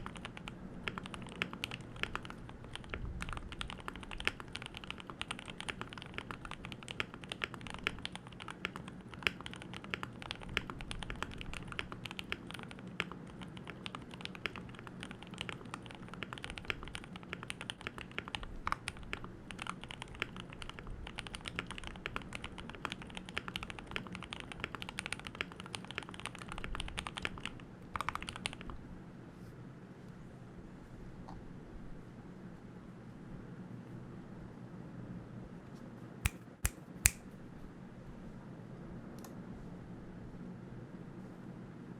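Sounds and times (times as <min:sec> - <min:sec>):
mechanical keyboard typing: 0:00.0 - 0:28.7.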